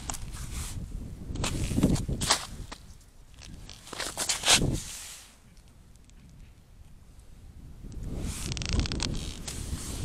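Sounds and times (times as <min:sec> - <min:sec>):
footsteps crunching in snow: 0:01.4 - 0:05.3.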